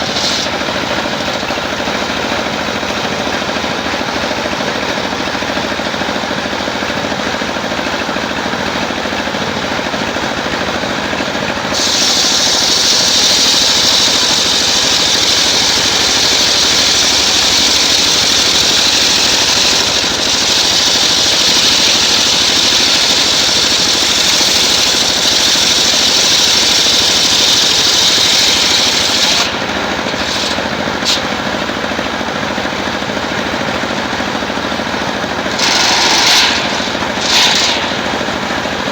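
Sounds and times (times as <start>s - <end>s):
saw blade cutting log: 0.0s - 3.8s, 11.7s - 38.9s
sawmill engine running: 0.0s - 38.9s.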